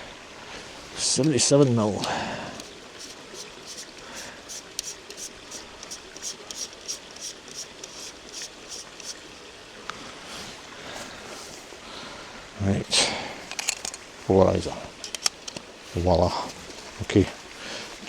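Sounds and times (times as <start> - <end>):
stream water running: 0.0 - 18.0.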